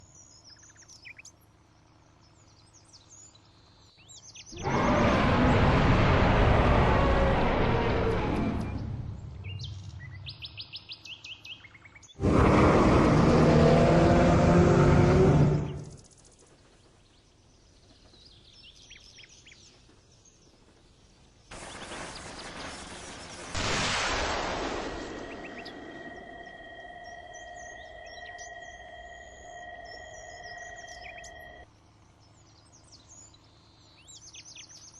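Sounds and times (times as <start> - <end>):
small birds chirping: 0.0 - 5.9, 8.0 - 12.4, 13.0 - 23.6, 24.7 - 34.9
loud rough rushing noise: 4.6 - 9.6, 12.2 - 16.0, 23.5 - 26.6
high bird chirps: 24.9 - 31.6.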